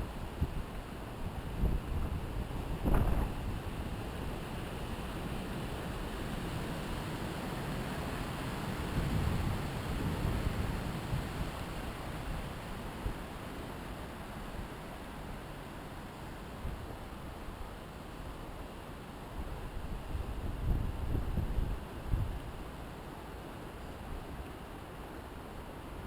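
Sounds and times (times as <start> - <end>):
wind rushing through treetops: 0.0 - 26.0.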